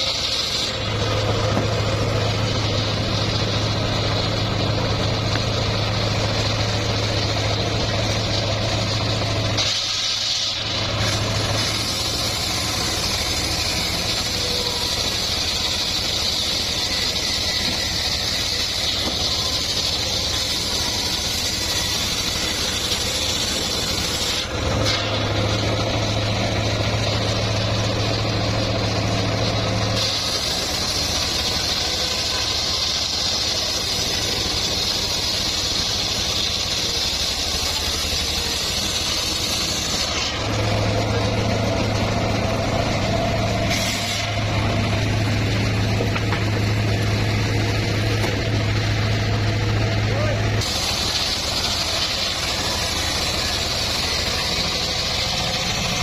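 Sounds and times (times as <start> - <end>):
high hiss of saw: 0.0 - 1.2, 9.3 - 27.9, 29.3 - 41.4, 42.6 - 45.4, 50.6 - 56.0
sawmill engine drone: 0.0 - 56.0.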